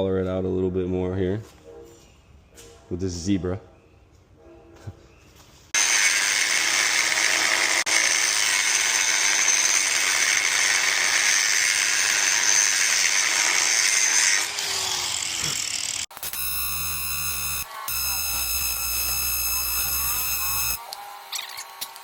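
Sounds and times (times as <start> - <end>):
grinder spinning down: 5.8 - 20.8
power grinder grinding metal: 5.8 - 22.0.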